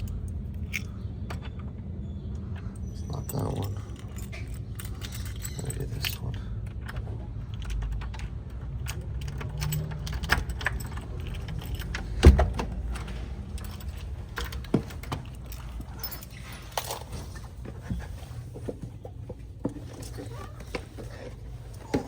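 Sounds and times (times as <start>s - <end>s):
low steady rumble: 0.0s - 22.0s
keys jangling: 2.8s - 18.0s.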